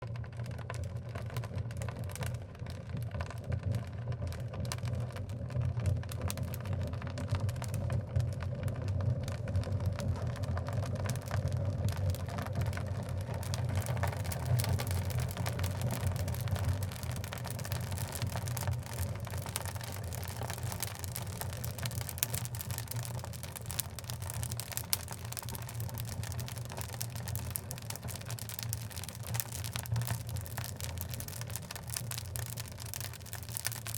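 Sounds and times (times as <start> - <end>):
fire crackles and pops: 0.0 - 33.9
low rumble of flames: 0.0 - 33.9.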